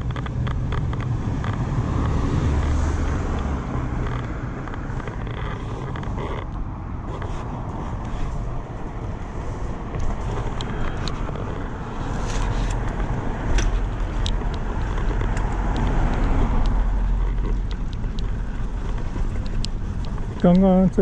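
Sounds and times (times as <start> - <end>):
light clicks and rattles: 0.0 - 21.0
wind and road rumble: 0.0 - 21.0.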